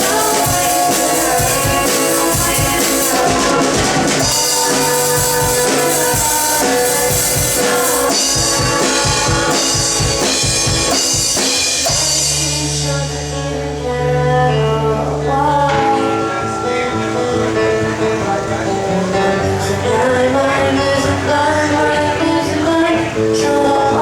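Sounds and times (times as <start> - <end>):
drum beat: 0.0 - 12.5
long held bass notes: 0.0 - 24.0
person singing melody: 0.0 - 24.0
rock band playing live: 0.0 - 24.0.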